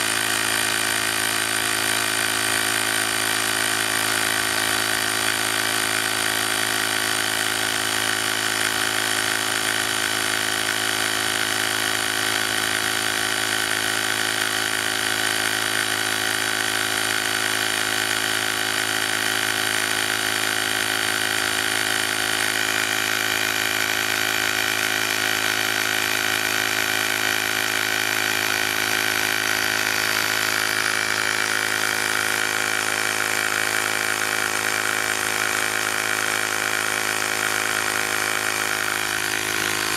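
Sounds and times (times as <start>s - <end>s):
small compressor motor running: 0.0s - 39.9s.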